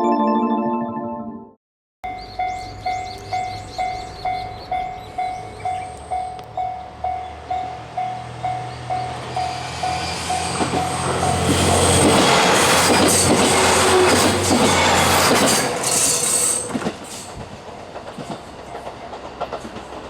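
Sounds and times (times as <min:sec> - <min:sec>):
level crossing warning bell: 0:02.1 - 0:11.9
approaching train rumble: 0:02.1 - 0:20.0.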